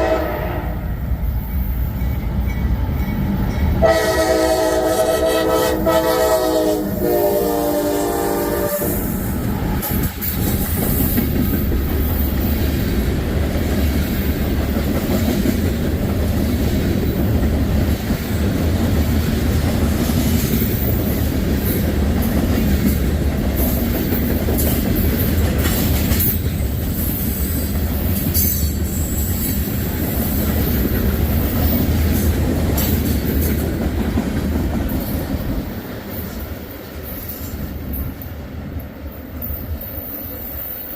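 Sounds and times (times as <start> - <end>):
freight train rumble: 0.0 - 40.9.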